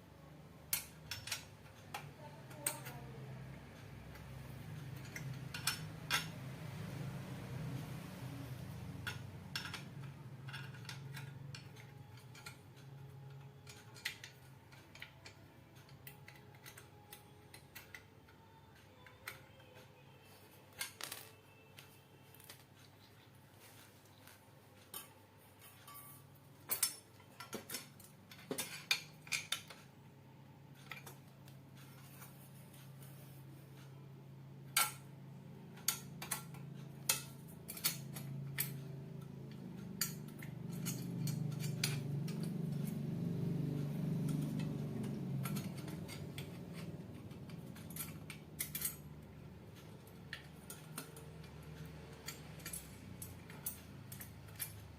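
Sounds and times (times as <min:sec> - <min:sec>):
low steady hum: 0:00.0 - 0:54.9
metal parts clinking: 0:00.7 - 0:03.0, 0:05.0 - 0:06.4, 0:08.6 - 0:18.1, 0:19.0 - 0:22.8, 0:24.8 - 0:29.9, 0:35.8 - 0:43.1, 0:43.7 - 0:54.9.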